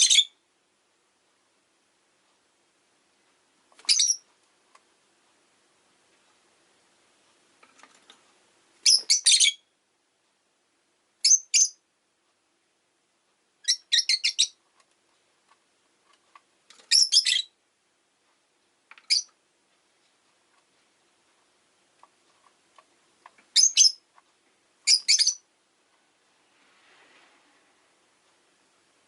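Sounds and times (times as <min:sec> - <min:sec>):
bird chirping: 0:00.0 - 0:00.4, 0:03.8 - 0:04.3, 0:08.8 - 0:09.7, 0:11.2 - 0:11.8, 0:13.6 - 0:14.6, 0:16.7 - 0:17.6, 0:19.0 - 0:19.4, 0:23.5 - 0:24.1, 0:24.8 - 0:25.5.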